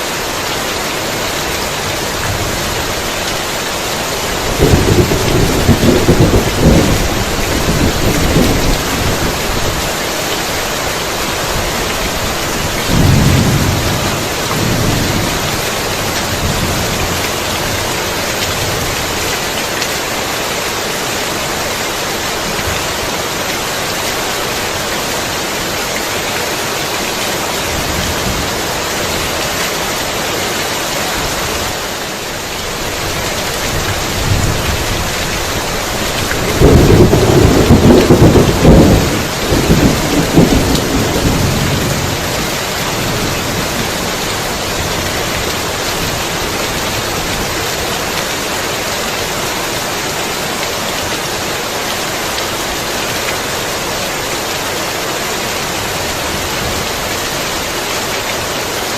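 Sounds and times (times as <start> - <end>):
heavy rain: 0.0 - 58.9
thunder rumble: 4.3 - 9.8, 12.7 - 17.4, 33.7 - 42.3.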